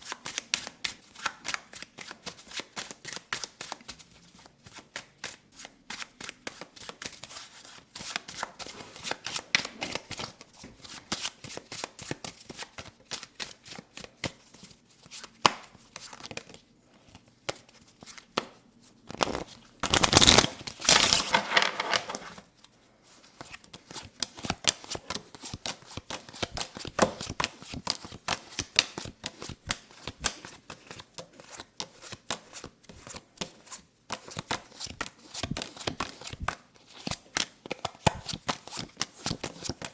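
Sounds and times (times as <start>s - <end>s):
playing cards clicking: 19.1s - 22.2s
cards shuffling: 19.1s - 22.4s.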